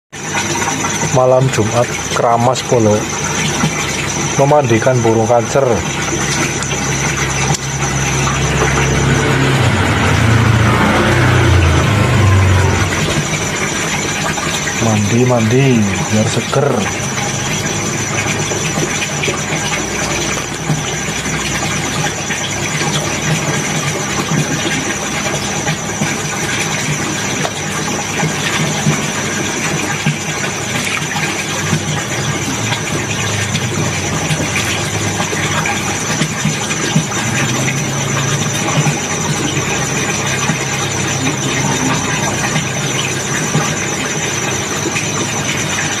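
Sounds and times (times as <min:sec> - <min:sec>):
small motor humming and whining: 0:05.4 - 0:14.7.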